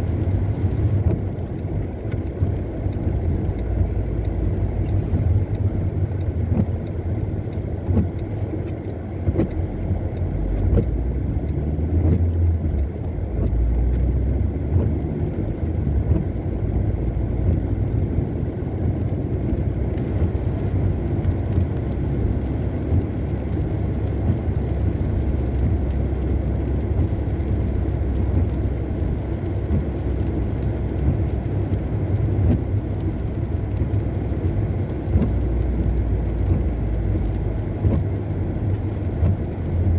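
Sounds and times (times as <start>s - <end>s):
car engine and tyres on wet road: 0.0s - 39.9s.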